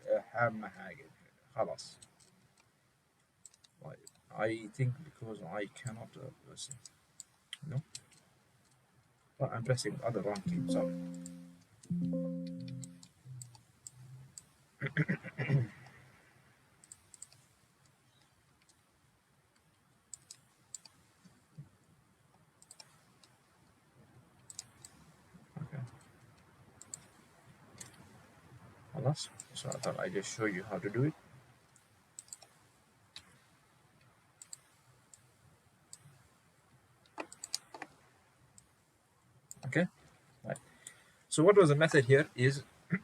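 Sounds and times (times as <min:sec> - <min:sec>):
computer mouse and key clicks: 0:02.0 - 0:04.3, 0:06.6 - 0:09.2, 0:10.2 - 0:14.6, 0:16.8 - 0:18.9, 0:19.5 - 0:21.4, 0:22.3 - 0:23.8, 0:24.4 - 0:25.1, 0:25.8 - 0:28.1, 0:29.3 - 0:30.0, 0:31.7 - 0:36.2, 0:37.0 - 0:38.0, 0:39.5 - 0:39.8
mouse and keyboard clicks: 0:03.4 - 0:04.3, 0:16.8 - 0:17.5, 0:19.6 - 0:21.0, 0:22.6 - 0:23.4, 0:24.4 - 0:25.0, 0:25.8 - 0:27.2, 0:27.8 - 0:28.1, 0:29.4 - 0:30.0, 0:31.7 - 0:32.6, 0:34.4 - 0:35.3, 0:37.1 - 0:38.0.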